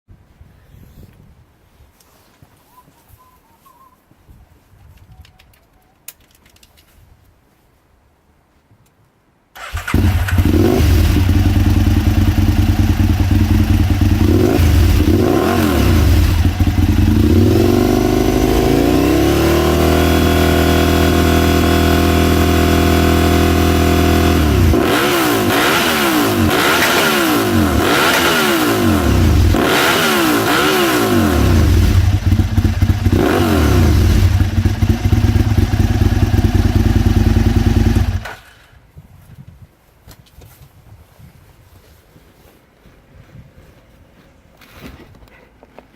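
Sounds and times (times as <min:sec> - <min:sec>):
motorcycle engine idling and revving: 0:09.6 - 0:38.7.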